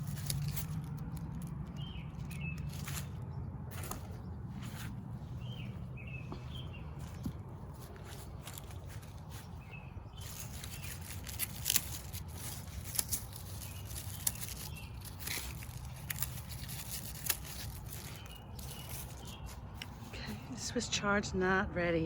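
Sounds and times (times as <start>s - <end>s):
outdoor rustling and crackling: 0.0s - 22.0s
steady low rumble: 0.0s - 22.0s.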